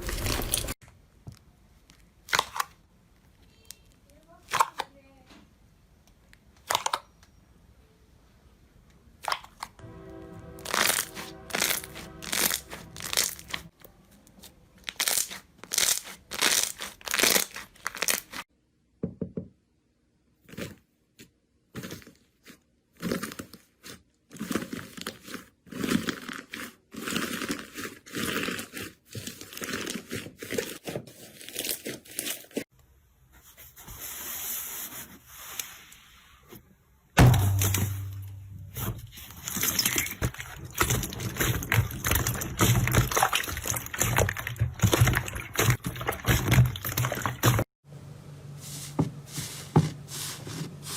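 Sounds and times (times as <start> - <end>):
slime crackling and popping: 14.8 - 18.4, 39.5 - 47.6.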